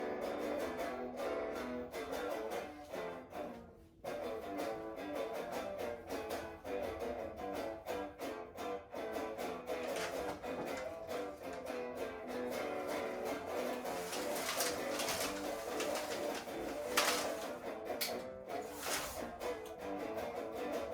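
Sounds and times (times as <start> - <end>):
guitar plucking and strumming: 0.0 - 20.9.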